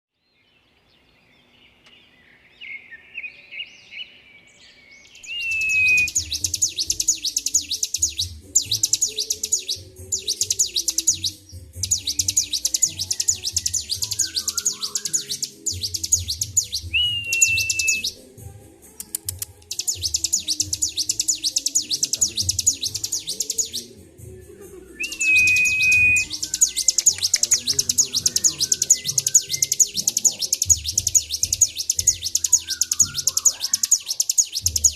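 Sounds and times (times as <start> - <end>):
soft bird chirps: 0.2 - 18.2, 18.9 - 24.0, 24.8 - 34.9
bird rattling trills: 5.2 - 18.2, 19.0 - 23.9, 25.1 - 34.9.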